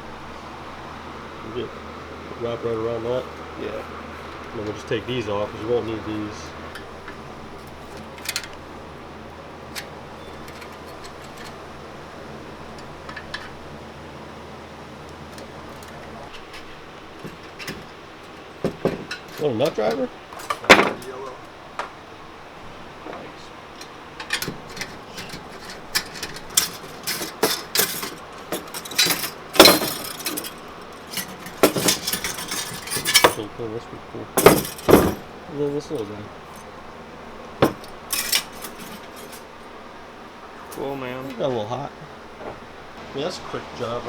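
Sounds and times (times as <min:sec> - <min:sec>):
room noise hum: 0:00.0 - 0:44.0
metal clank: 0:06.0 - 0:08.7, 0:09.7 - 0:11.8, 0:15.3 - 0:22.0, 0:23.8 - 0:33.6, 0:34.4 - 0:36.8, 0:37.6 - 0:39.7
metal parts clicking: 0:06.8 - 0:08.6, 0:09.7 - 0:11.7, 0:15.3 - 0:21.1, 0:23.8 - 0:33.5, 0:34.4 - 0:35.3, 0:37.6 - 0:39.5.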